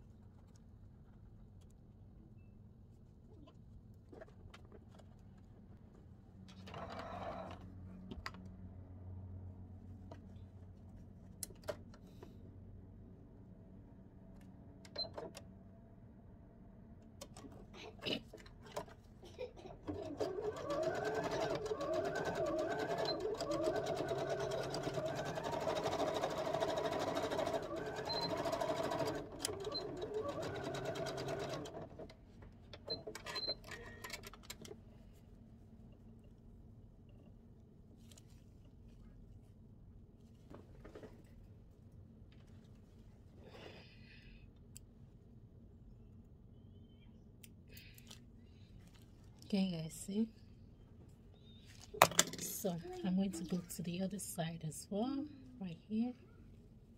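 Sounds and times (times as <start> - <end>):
sewing machine needle chatter: 19.9 - 31.9.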